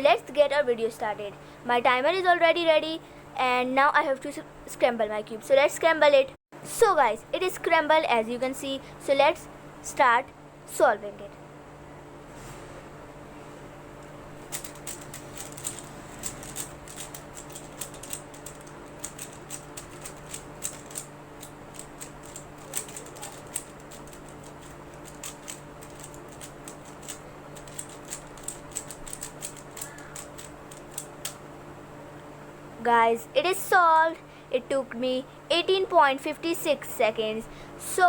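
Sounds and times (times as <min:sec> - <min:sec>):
puzzle cube clicking: 0:14.5 - 0:31.4.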